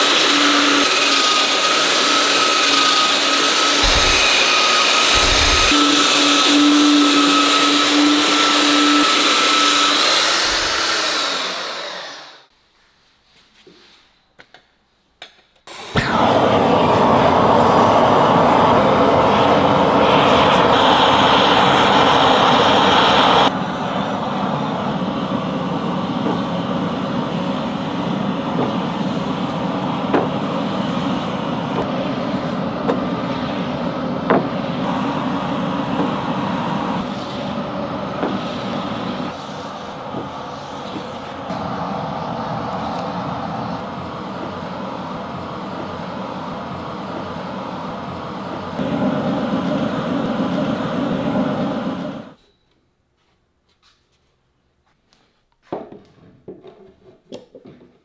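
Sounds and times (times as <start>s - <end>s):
workshop tools working wood: 0.0s - 12.5s, 26.1s - 52.4s.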